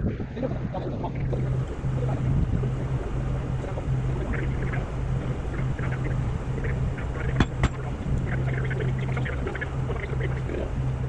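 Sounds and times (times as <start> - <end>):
machine engine running: 0.0 - 11.0.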